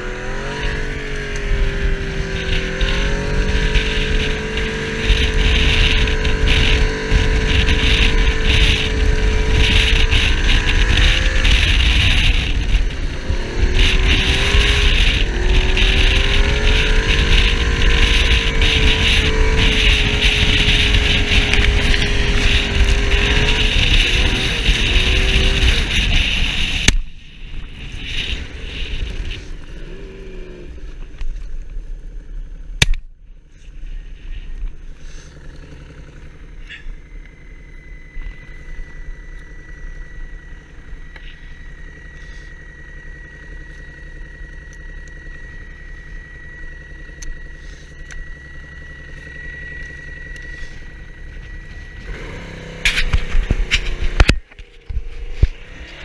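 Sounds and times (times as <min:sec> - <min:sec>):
thin steady whine: 0:00.0 - 0:56.0
vehicle engine running at low revs: 0:00.0 - 0:56.0.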